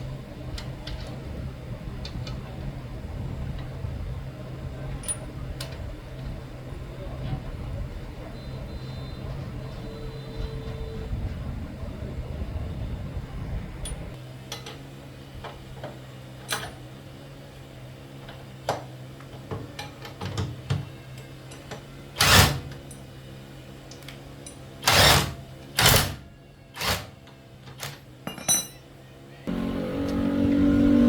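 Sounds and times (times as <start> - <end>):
motor humming: 22.2 - 22.9, 24.8 - 26.2, 26.8 - 27.2, 29.5 - 31.0.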